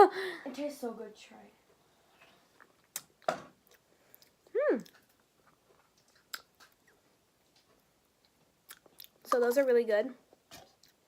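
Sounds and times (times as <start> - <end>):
crunchy chewing: 2.5 - 9.3, 10.3 - 11.0.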